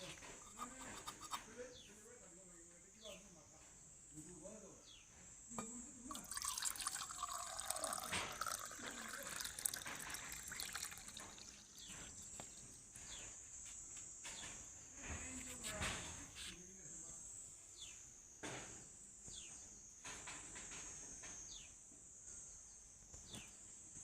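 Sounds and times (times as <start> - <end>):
water pouring and trickling: 0.4 - 1.4, 6.1 - 12.9
water dripping: 5.6 - 12.9.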